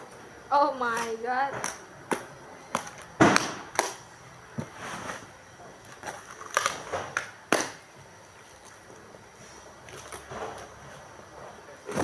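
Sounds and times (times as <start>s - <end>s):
packaging crinkling: 5.8s - 7.7s.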